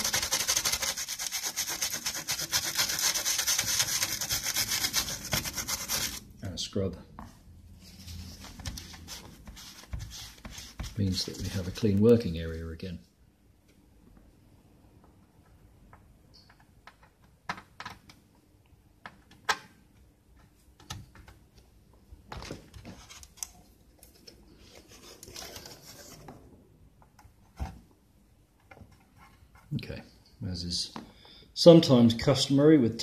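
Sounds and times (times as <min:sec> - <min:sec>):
scratchy rustle: 0:00.0 - 0:06.2, 0:07.8 - 0:12.7.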